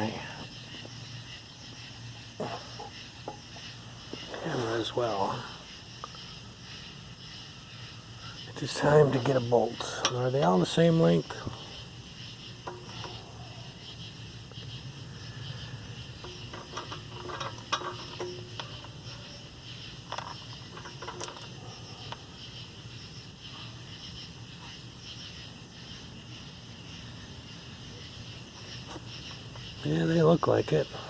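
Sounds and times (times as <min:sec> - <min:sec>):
metallic clicks of bolts: 0:16.1 - 0:19.4.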